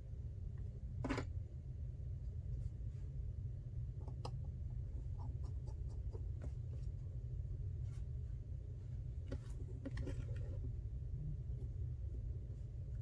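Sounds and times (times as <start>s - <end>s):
low hum: 0.0s - 13.0s.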